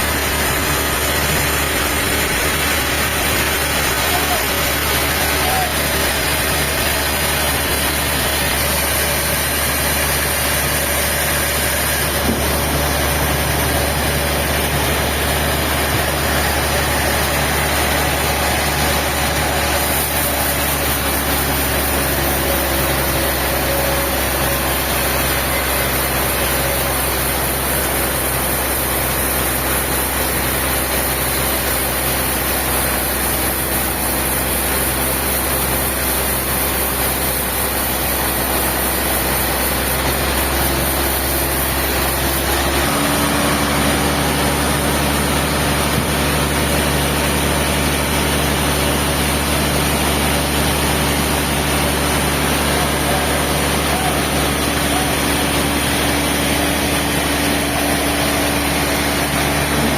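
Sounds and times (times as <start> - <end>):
heavy engine running: 0.0 - 59.9.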